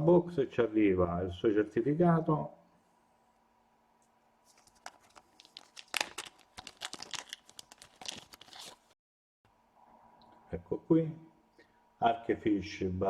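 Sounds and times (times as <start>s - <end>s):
paper crinkling and rustling: 4.4s - 9.0s.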